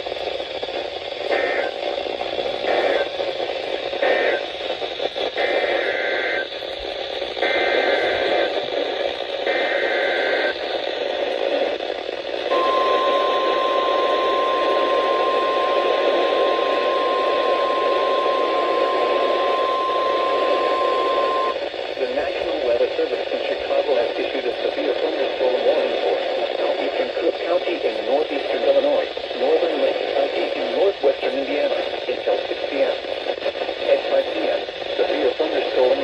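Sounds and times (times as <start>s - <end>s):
static hiss: 0.0s - 36.0s
steady warning alarm tone: 12.5s - 21.6s
warbling data bursts: 12.5s - 21.6s.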